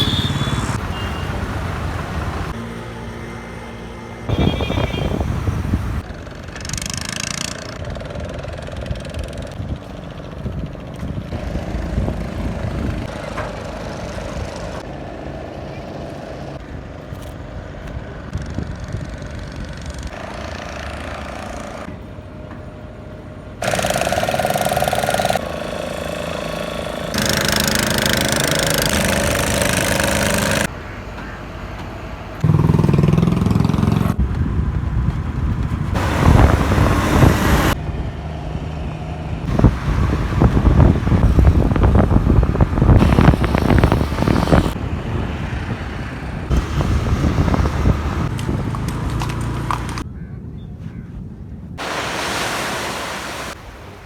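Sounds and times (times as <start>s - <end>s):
vehicles passing: 0.0s - 50.1s, 51.8s - 54.0s.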